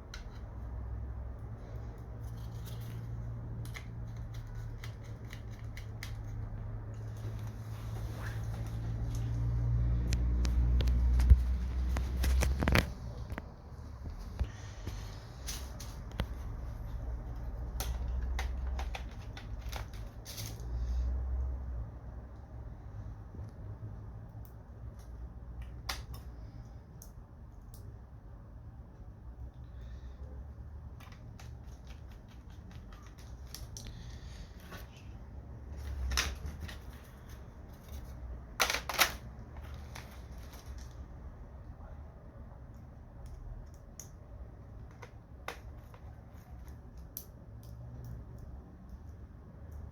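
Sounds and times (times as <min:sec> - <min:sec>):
clicks and scrapes of laptop repair: 0:00.0 - 0:00.8, 0:01.8 - 0:09.4, 0:10.0 - 0:13.5, 0:14.3 - 0:20.7, 0:30.9 - 0:41.0, 0:43.2 - 0:47.8
hands handling laptop clicks: 0:10.1 - 0:13.5, 0:17.3 - 0:20.6, 0:37.8 - 0:41.0.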